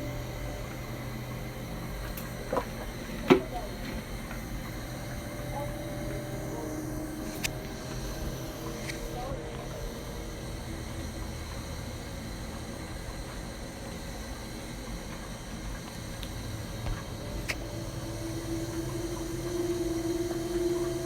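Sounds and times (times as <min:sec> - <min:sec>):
faint steady tone: 0:16.4 - 0:21.0
low hum: 0:16.6 - 0:21.0.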